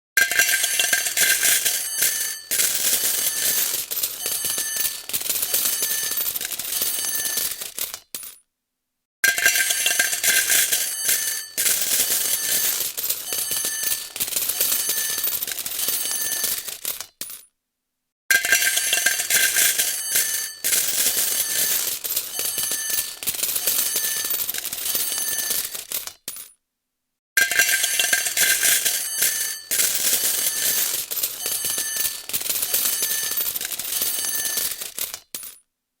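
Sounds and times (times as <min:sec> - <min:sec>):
coins clattering into metal tray: 0:00.2 - 0:08.4, 0:09.3 - 0:17.5, 0:18.3 - 0:26.6, 0:27.4 - 0:35.6.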